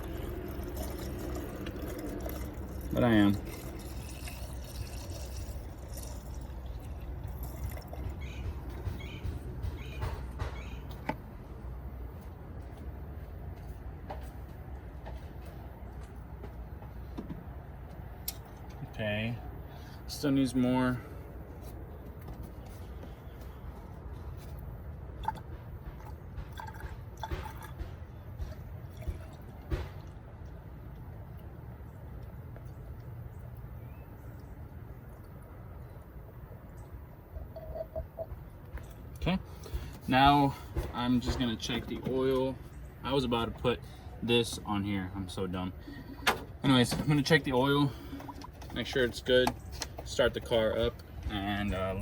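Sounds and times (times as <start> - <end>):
liquid pouring from a jug: 0.0 - 8.8, 25.2 - 30.6, 47.8 - 49.2.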